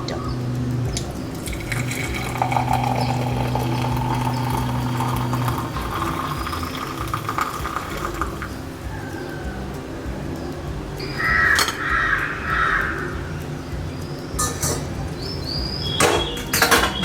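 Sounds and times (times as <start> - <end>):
liquid trickling and splashing: 0.0 - 17.0
hot drink poured into a cup: 1.3 - 8.8.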